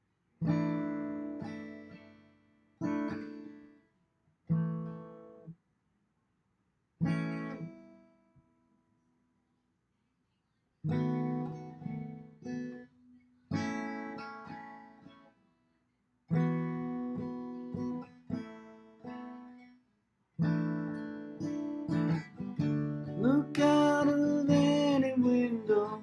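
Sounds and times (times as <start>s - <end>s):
acoustic guitar strummed chords: 13.5s - 15.4s, 20.4s - 26.0s.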